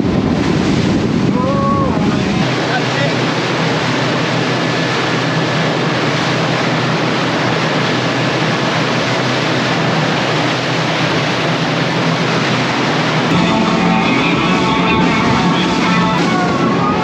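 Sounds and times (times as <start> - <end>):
wind buffeting microphone: 0.0 - 2.8
powerboat engine drone: 0.0 - 17.0.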